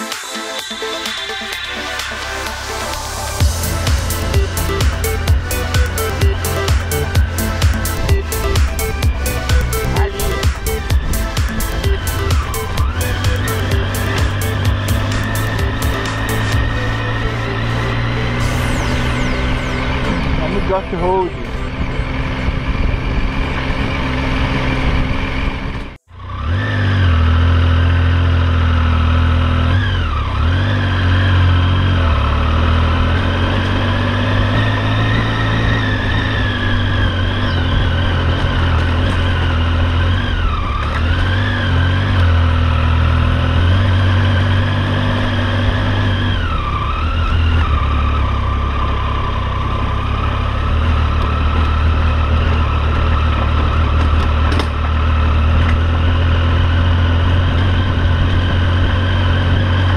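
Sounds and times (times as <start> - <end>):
road noise: 0.0 - 59.9
motorcycle engine running: 1.4 - 59.9.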